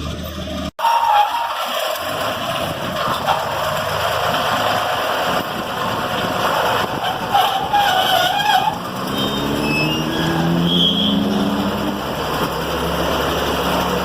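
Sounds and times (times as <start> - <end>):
heavy equipment engine running: 0.0 - 14.0
road surface breaking: 0.5 - 14.0.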